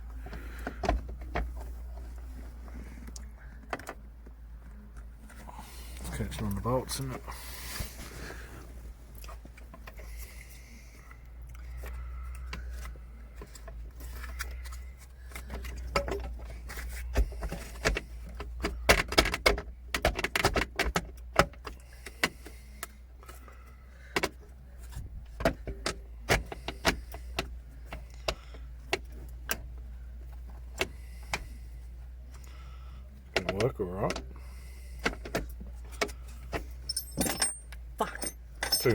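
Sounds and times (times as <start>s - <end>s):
metallic clinks and knocks: 36.7s - 38.9s.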